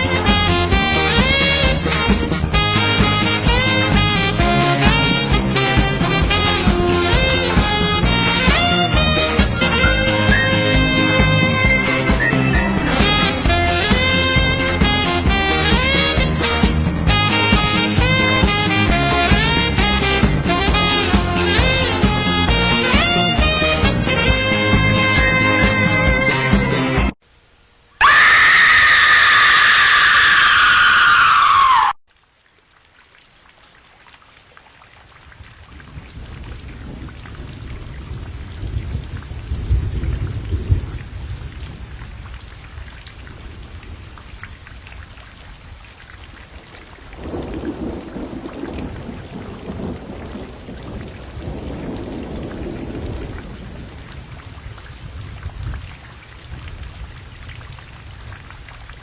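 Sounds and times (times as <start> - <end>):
rain hiss: 0.0 - 26.5, 27.2 - 59.0
low rumbling thunder: 35.5 - 44.6, 47.1 - 58.8.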